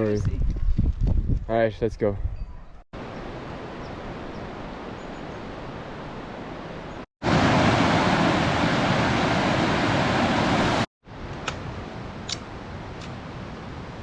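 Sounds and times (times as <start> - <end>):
rushing mountain water: 5.6 - 10.9.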